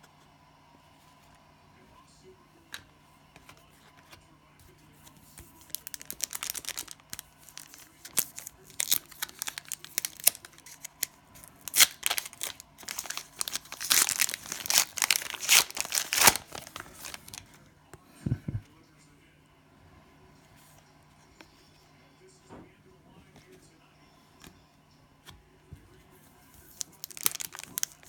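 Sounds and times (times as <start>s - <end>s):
cellophane tearing and crinkling: 5.6s - 17.4s, 26.7s - 28.0s.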